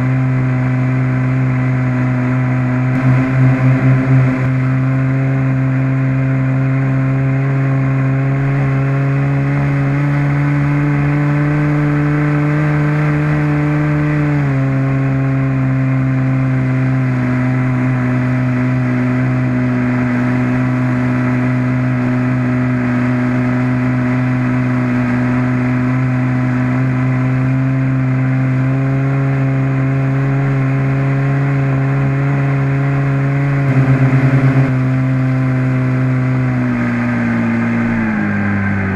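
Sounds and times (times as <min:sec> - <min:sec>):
model aeroplane engine buzzing: 0:00.0 - 0:38.9.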